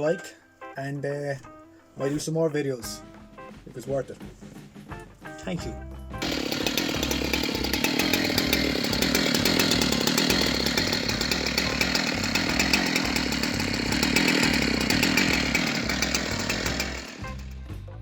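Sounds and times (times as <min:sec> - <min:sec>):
chainsaw cutting log: 0:06.2 - 0:17.7.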